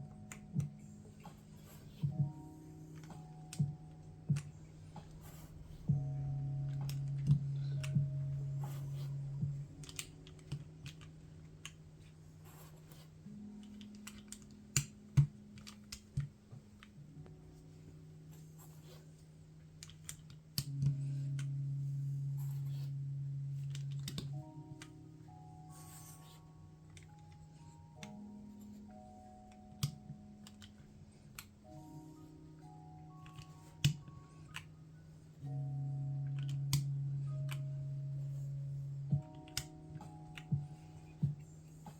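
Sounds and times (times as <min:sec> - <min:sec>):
keycaps clicking onto keyboard: 0:00.0 - 0:17.4, 0:23.6 - 0:34.8, 0:39.1 - 0:41.9
background music low notes: 0:00.0 - 0:41.9.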